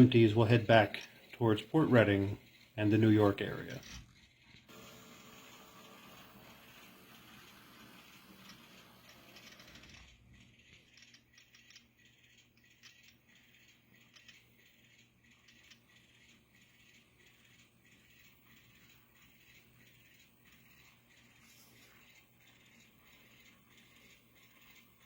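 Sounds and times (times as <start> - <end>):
model train cars clicking over rails: 6.1 - 11.9, 12.5 - 14.7.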